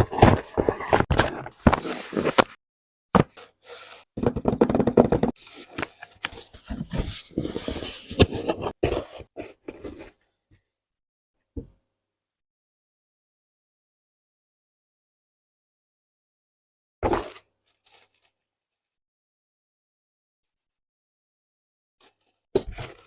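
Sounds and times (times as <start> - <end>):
packaging scraping and rustling: 0.0 - 2.6.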